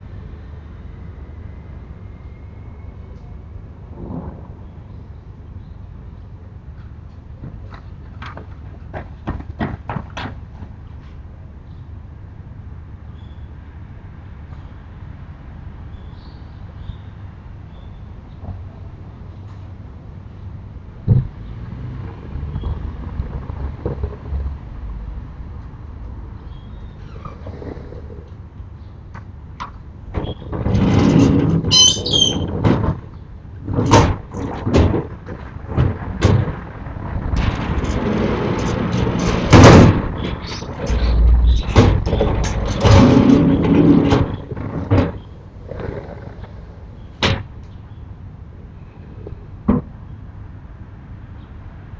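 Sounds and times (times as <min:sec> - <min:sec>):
low outdoor rumble: 0:00.0 - 0:51.9
shutters knocking and rattling: 0:07.4 - 0:10.8, 0:29.1 - 0:45.6
brief high squeak: 0:31.7 - 0:32.5.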